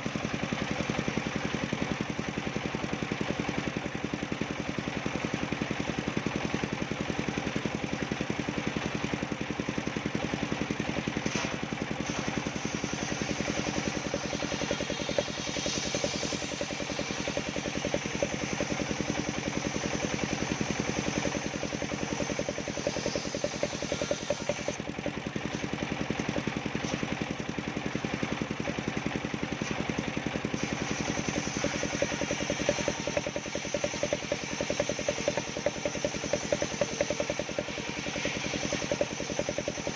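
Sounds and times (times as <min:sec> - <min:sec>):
saw engine running steadily: 0:00.0 - 0:39.9
saw blade hissing through wood: 0:11.4 - 0:24.8, 0:30.5 - 0:39.9.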